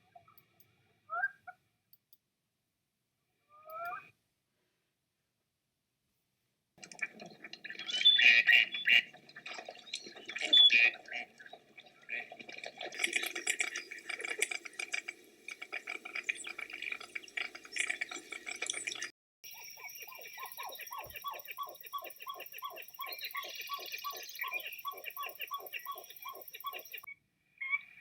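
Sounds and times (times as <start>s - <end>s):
birds chattering: 6.9s - 27.1s.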